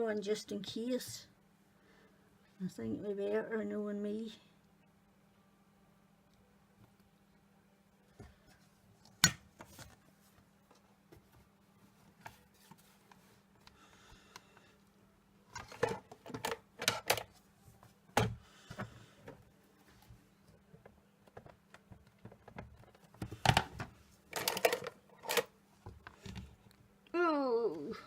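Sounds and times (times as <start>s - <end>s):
faint steady hum: 0.0s - 28.0s
paper and craft tools handled: 20.8s - 26.5s.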